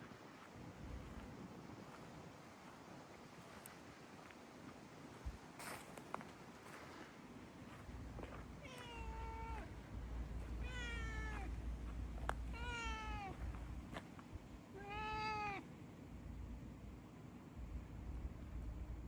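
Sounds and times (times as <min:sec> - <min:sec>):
cat meowing: 0:08.6 - 0:09.7, 0:10.6 - 0:11.6, 0:12.4 - 0:13.5, 0:14.7 - 0:15.6.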